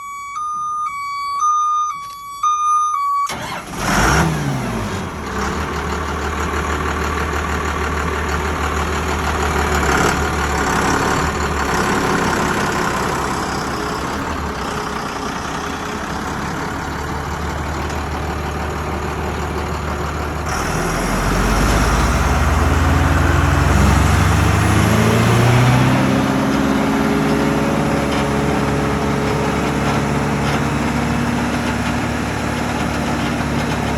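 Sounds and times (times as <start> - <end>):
electronic warning beep: 0.0 - 3.3
diesel engine running and revving: 3.3 - 33.9.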